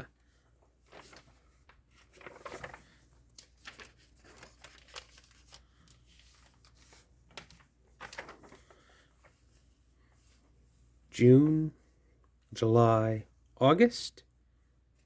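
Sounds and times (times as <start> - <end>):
paper magazines rustling: 0.2 - 10.6.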